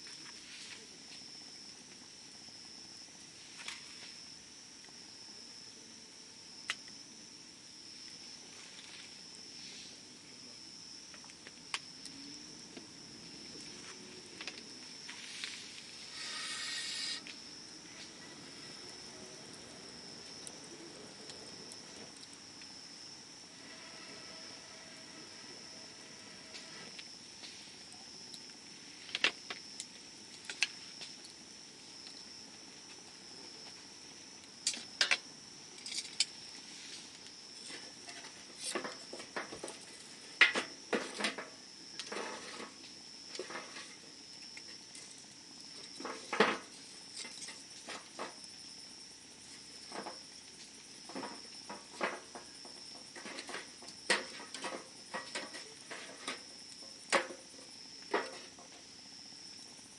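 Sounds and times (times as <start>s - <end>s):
high insect trill: 0.0s - 59.9s
campfire crackling and popping: 6.6s - 7.0s, 11.0s - 15.2s, 15.8s - 23.4s, 26.9s - 59.9s.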